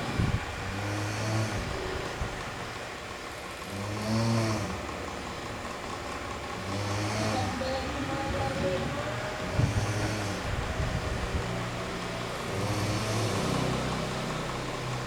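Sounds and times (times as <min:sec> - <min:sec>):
steady background noise: 0:00.0 - 0:15.0
person snoring: 0:09.6 - 0:10.5.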